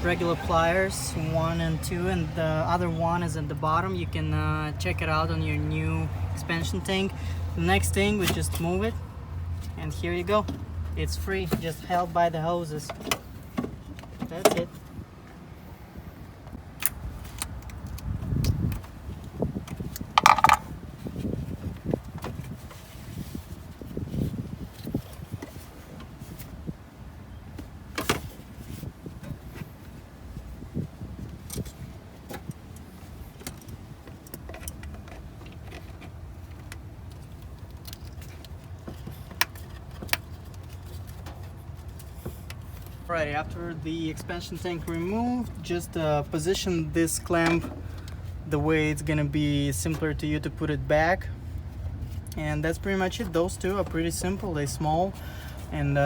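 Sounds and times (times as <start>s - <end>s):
rustle of parts being moved: 17.0s - 45.6s
plastic and metal parts rattling: 19.8s - 20.7s
clicks and knocks: 20.2s - 20.7s.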